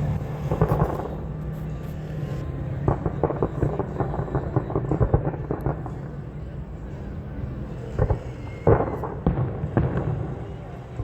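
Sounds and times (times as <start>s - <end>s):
fireworks crackling: 0.0s - 6.4s
low rumble: 0.0s - 11.0s.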